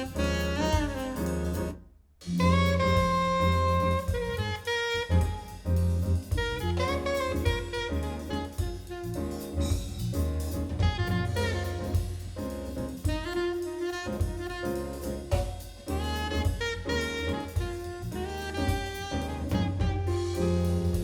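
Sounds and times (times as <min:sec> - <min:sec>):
jazz music over loudspeakers: 0:00.0 - 0:21.0.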